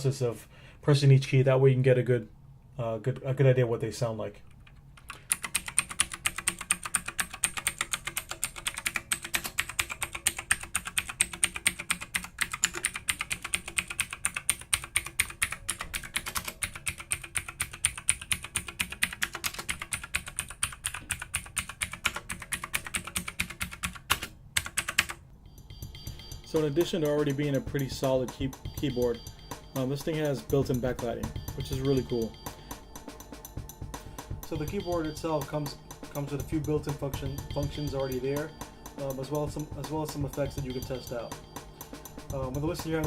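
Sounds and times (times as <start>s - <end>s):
mechanical keyboard clicks: 4.5s - 25.2s.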